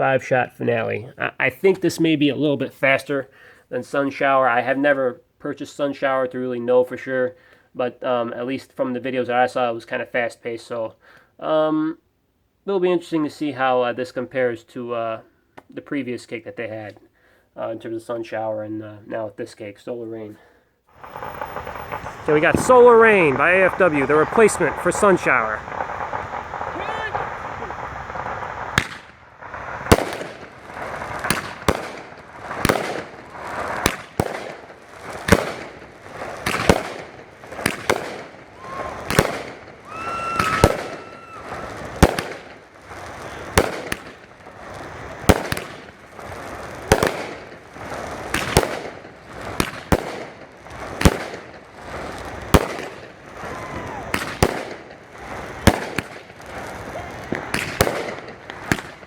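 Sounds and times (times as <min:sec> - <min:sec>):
fireworks cake launches: 0:20.9 - 0:59.0
fireworks crackle: 0:20.9 - 0:59.0.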